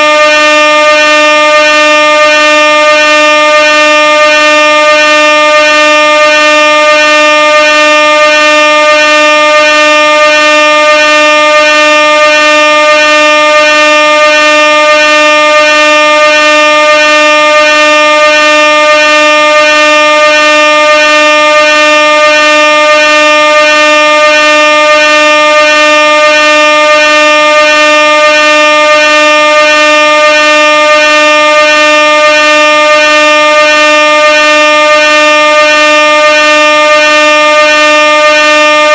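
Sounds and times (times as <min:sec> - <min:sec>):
air horn blaring: 0:00.0 - 0:38.9.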